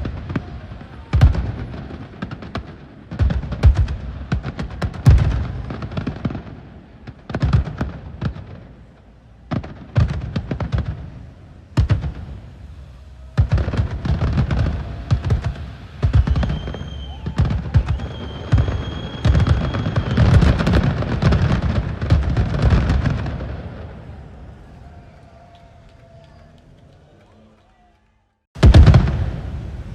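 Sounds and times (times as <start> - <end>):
fireworks booms and crackles: 0.0 - 26.3, 28.6 - 29.9
high steady whistle: 16.0 - 20.6.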